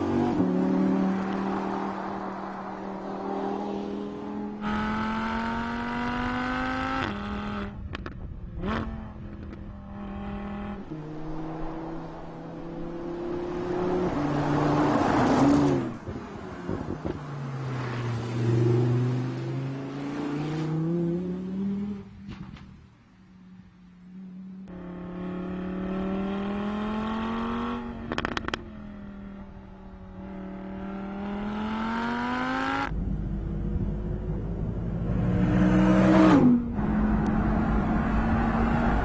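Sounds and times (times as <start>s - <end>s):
car engine accelerating: 0.0s - 22.2s, 23.5s - 39.0s.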